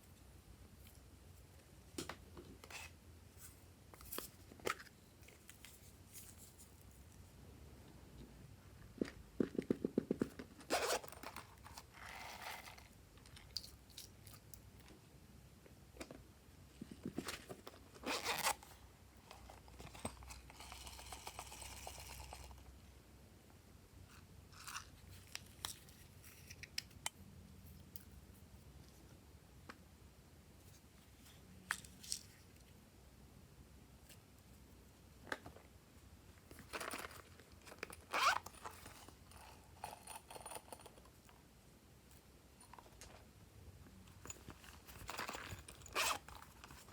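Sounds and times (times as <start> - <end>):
soft crackling hiss: 0.0 - 9.4.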